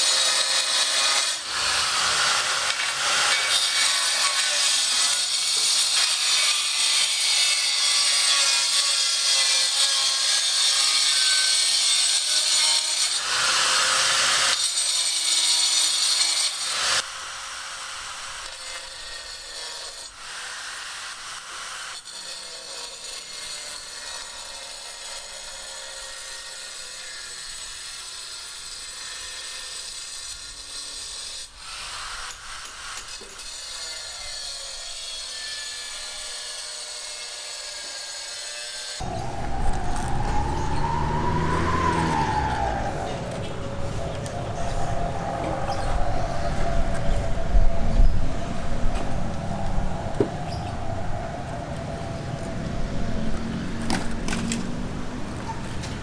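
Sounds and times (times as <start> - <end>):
power tool rasping: 0.0 - 17.0.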